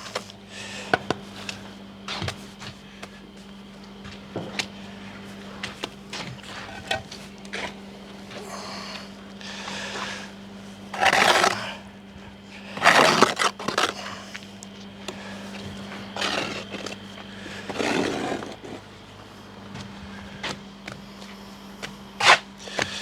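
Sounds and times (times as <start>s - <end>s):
trowel scraping mortar: 10.9s - 11.7s, 12.7s - 14.4s, 15.9s - 17.0s, 17.6s - 18.8s.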